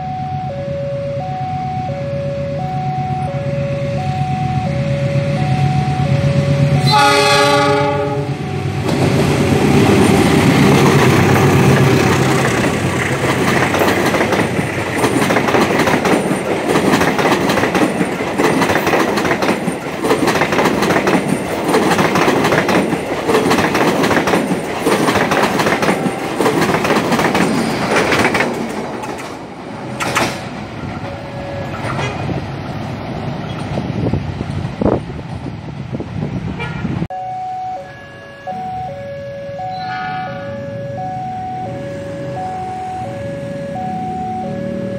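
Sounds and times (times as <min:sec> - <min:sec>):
train horn blast: 0:04.4 - 0:08.7, 0:36.6 - 0:37.0, 0:39.7 - 0:40.8
train wheels clattering over rail joints: 0:08.8 - 0:35.4.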